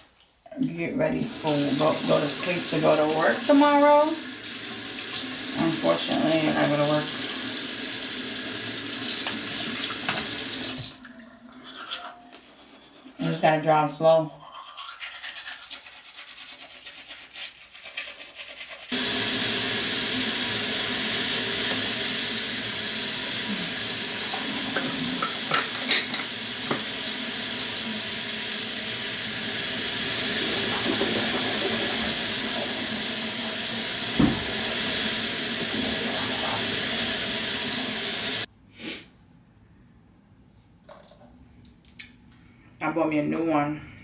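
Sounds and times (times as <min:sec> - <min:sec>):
sink tap running: 0:01.1 - 0:11.8, 0:18.9 - 0:38.5
loud thump: 0:34.2 - 0:34.5.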